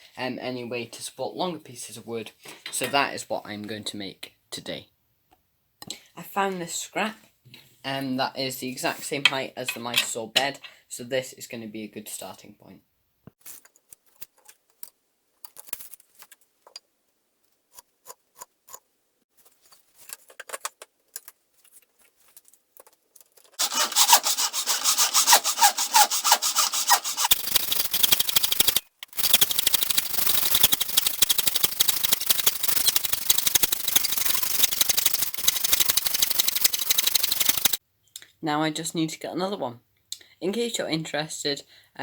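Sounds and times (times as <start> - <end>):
hand saw cutting wood: 23.6 - 37.8.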